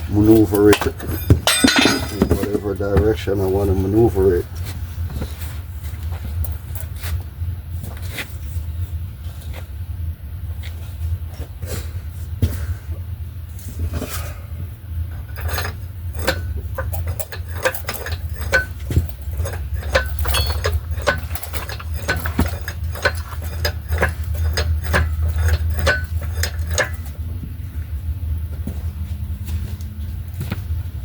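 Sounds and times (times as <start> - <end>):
steady low rumble: 0.0 - 31.0
light metallic clinks and knocks: 0.3 - 3.3, 15.1 - 27.3.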